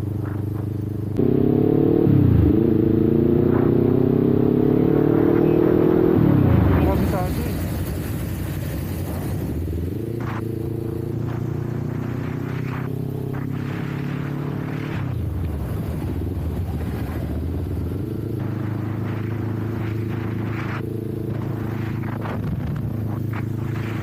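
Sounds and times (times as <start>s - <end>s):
motorcycle engine running: 0.0s - 24.0s
wind noise on microphone: 5.6s - 24.0s.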